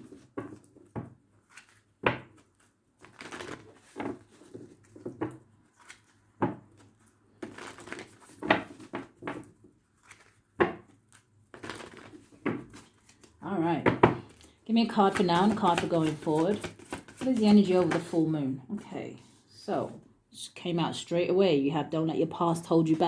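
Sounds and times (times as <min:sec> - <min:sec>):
cards being shuffled: 0:01.4 - 0:10.4, 0:11.1 - 0:13.3, 0:14.2 - 0:18.2.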